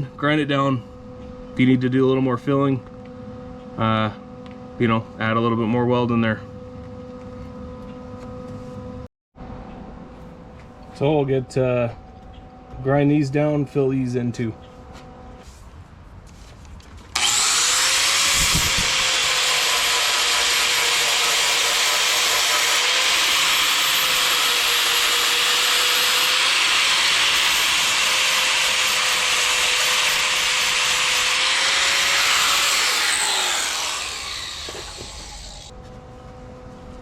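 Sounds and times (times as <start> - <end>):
angle grinder grinding metal: 17.2 - 35.7.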